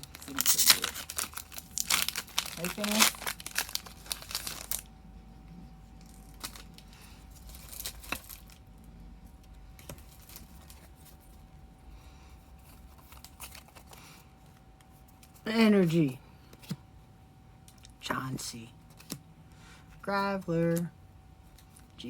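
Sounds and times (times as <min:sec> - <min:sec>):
trading cards clicking and rustling: 0:00.0 - 0:04.8, 0:06.0 - 0:08.6, 0:12.7 - 0:14.1
foil pack crinkling: 0:00.0 - 0:04.9, 0:06.0 - 0:08.7, 0:09.8 - 0:11.3.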